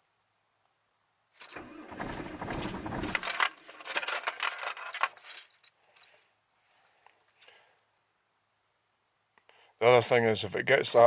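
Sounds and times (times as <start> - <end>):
keys jangling: 3.1 - 6.2.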